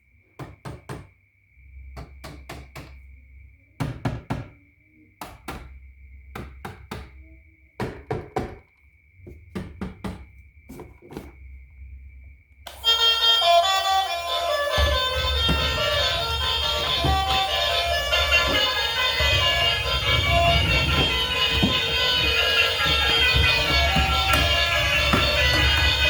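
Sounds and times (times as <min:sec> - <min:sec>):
music: 0:12.7 - 0:26.0
sharp knocks: 0:14.7 - 0:26.0.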